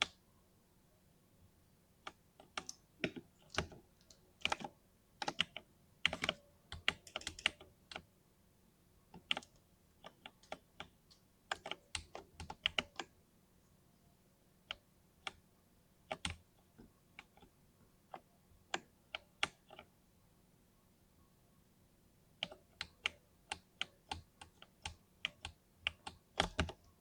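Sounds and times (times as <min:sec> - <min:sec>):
mechanical keyboard typing: 0:02.1 - 0:08.1, 0:09.2 - 0:13.1, 0:16.1 - 0:16.4, 0:22.4 - 0:26.9.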